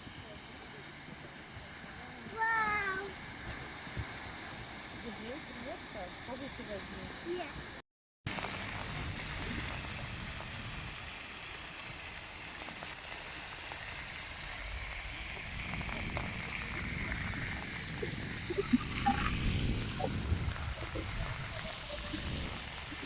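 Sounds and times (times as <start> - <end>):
steady rushing wash: 0.0 - 23.0
low rumble: 14.2 - 23.0.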